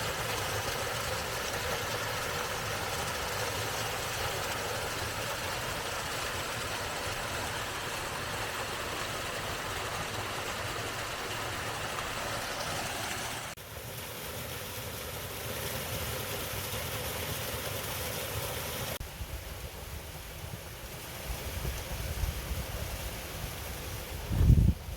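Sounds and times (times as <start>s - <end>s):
waterfall rushing: 0.0s - 13.6s.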